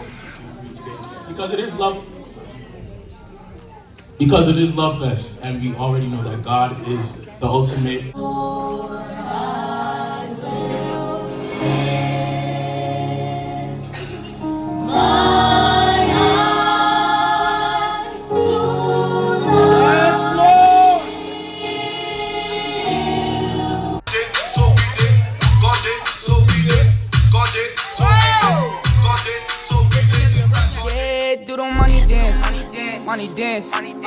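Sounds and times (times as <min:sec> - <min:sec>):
gospel choir singing in harmony: 0:08.1 - 0:24.3, 0:28.5 - 0:34.0
music track with a beat: 0:24.2 - 0:31.1, 0:31.8 - 0:34.0.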